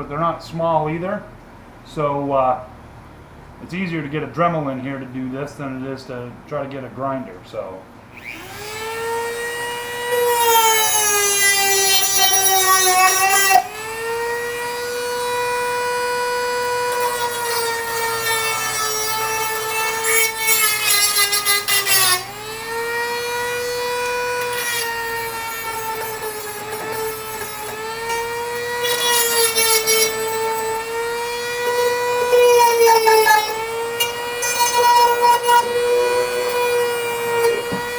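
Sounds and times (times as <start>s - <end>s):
rotary tool grinding metal: 8.1s - 37.9s.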